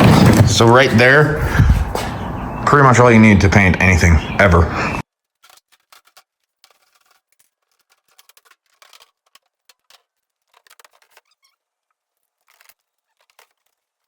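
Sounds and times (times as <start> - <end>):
faint clicks and rustles of gear: 5.1 - 14.0.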